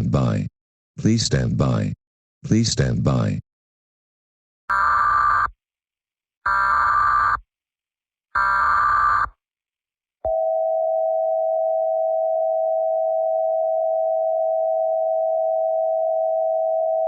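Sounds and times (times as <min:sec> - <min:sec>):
screechy digital header bursts: 0:08.4 - 0:09.3.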